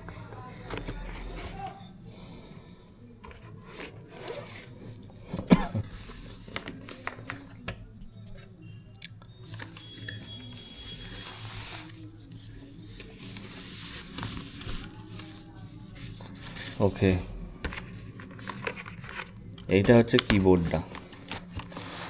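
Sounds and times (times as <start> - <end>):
packaging rustling and tearing: 9.5 - 17.2.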